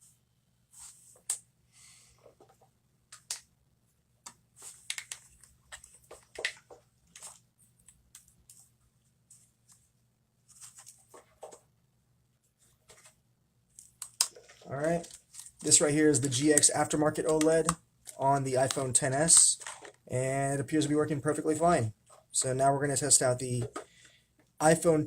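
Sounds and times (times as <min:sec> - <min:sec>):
hands handling phone parts: 0:04.2 - 0:09.9, 0:12.6 - 0:15.8, 0:16.4 - 0:20.1.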